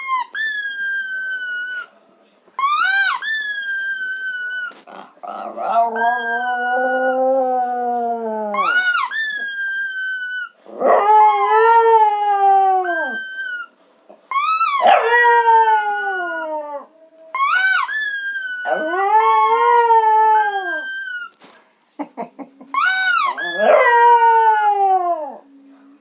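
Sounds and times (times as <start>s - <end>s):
dog howling: 5.0s - 9.1s, 10.7s - 13.6s, 14.4s - 21.2s, 22.6s - 25.6s.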